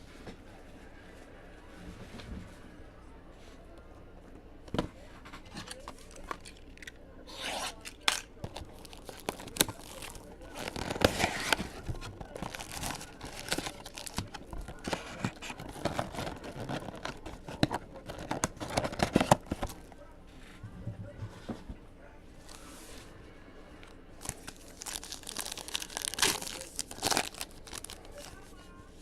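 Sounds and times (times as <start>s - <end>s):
cards clicking and scraping: 5.3s - 19.9s
wrapper tearing and crinkling: 7.6s - 19.8s, 24.2s - 28.4s.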